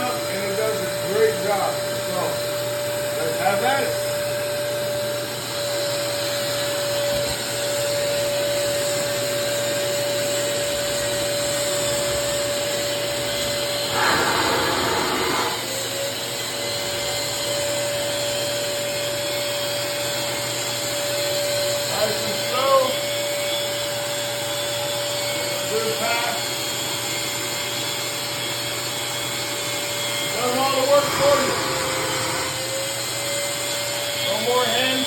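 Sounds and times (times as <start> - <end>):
drywall sander motor whine: 0.0 - 35.0
vacuum suction rushing: 13.8 - 15.7, 30.9 - 32.7.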